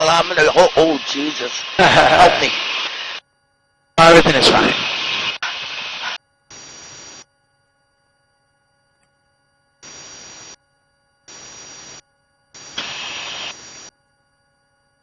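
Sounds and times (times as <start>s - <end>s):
intercom hiss bursts: 0.0s - 3.2s, 4.0s - 7.2s, 9.8s - 10.6s, 11.3s - 12.0s, 12.6s - 13.9s
faint steady hum: 0.0s - 15.0s.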